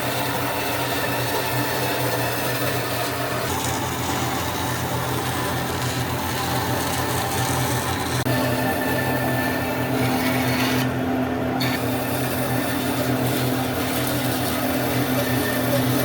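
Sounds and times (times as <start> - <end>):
electric power tool motor hum: 0.0 - 11.0, 11.6 - 16.0.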